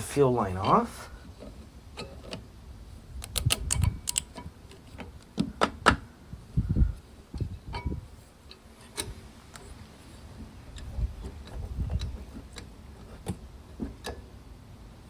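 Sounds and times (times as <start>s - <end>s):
hand tools clicking and tapping: 3.2s - 5.8s.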